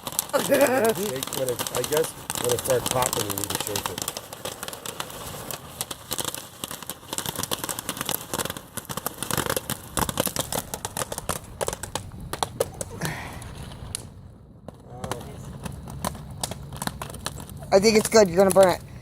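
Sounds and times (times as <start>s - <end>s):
foil crinkling: 0.0s - 6.3s.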